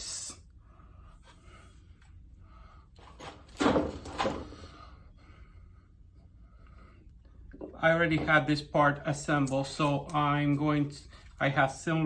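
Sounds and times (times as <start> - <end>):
small parts clicking and rustling: 9.2 - 11.5.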